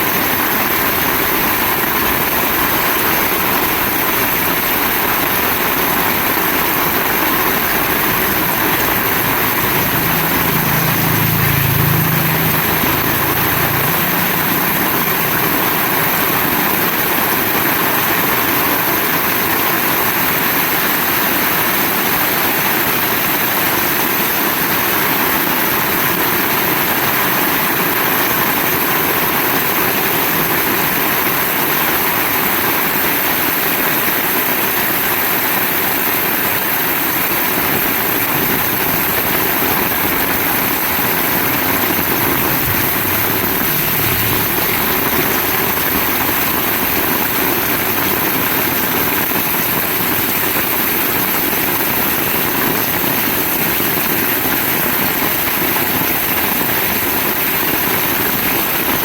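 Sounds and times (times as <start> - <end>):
heavy rain hissing: 0.0 - 59.0
faint low rumble: 38.4 - 48.1.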